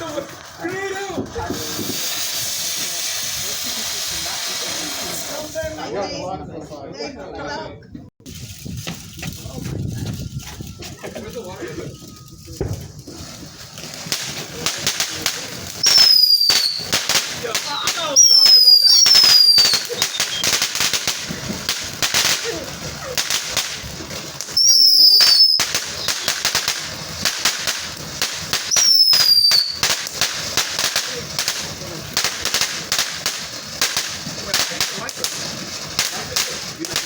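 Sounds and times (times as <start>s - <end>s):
firework burst with whistle: 0.0s - 5.6s, 12.0s - 35.1s
fireworks crackling: 0.0s - 6.2s, 8.2s - 37.0s.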